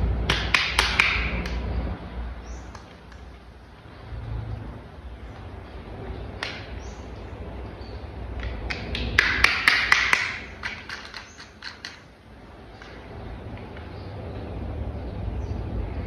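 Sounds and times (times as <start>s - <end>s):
plastic toy parts clicking: 10.6s - 12.1s.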